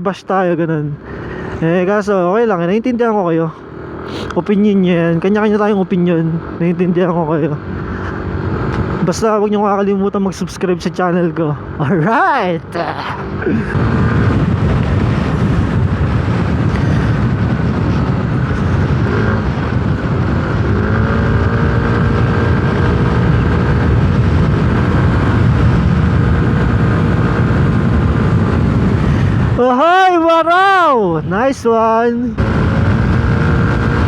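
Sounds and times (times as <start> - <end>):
scooter engine drone: 3.6 - 9.1, 11.6 - 31.4, 32.3 - 34.0
wind rush on microphone: 7.5 - 9.2, 11.6 - 34.0.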